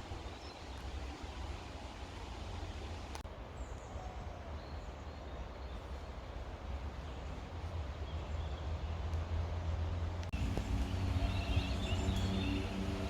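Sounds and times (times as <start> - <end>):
wind rumble on microphone: 8.0 - 13.0.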